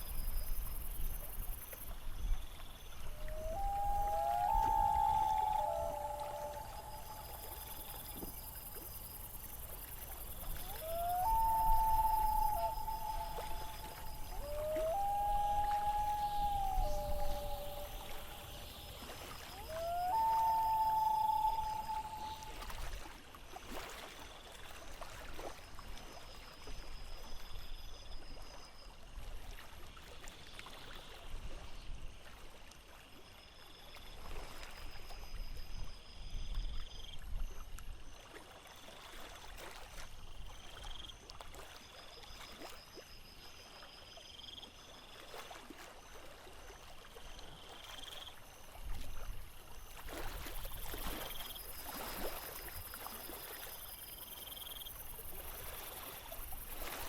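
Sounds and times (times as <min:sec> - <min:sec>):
waves lapping against hull: 0:03.1 - 0:23.0
short rising chirps: 0:03.3 - 0:08.1, 0:10.7 - 0:18.9, 0:19.6 - 0:22.7.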